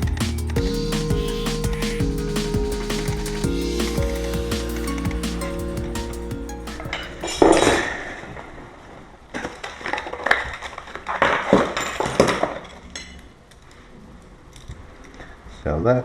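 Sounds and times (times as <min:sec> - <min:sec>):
background music: 0:00.0 - 0:08.1.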